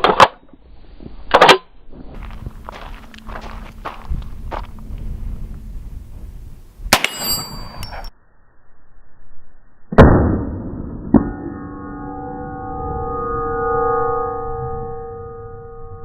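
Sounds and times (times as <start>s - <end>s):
gunshot hitting steel plate: 6.9s - 7.7s
steady ringing tones: 7.0s - 7.9s, 11.3s - 16.0s.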